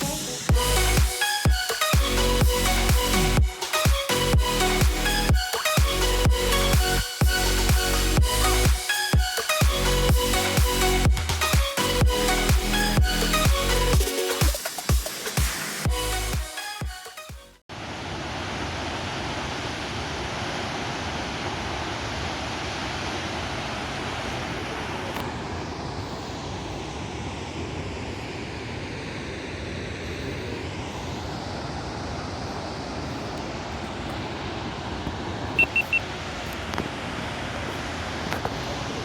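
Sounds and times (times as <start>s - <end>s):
waterfall roaring: 17.8s - 39.0s
short high beeps: 35.6s - 36.0s.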